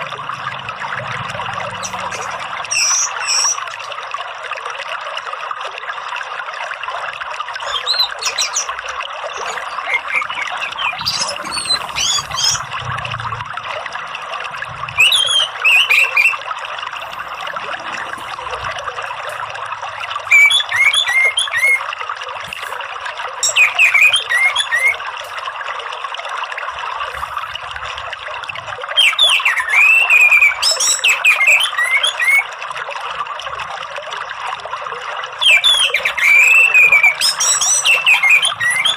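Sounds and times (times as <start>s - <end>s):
running water trickling: 0.0s - 38.9s.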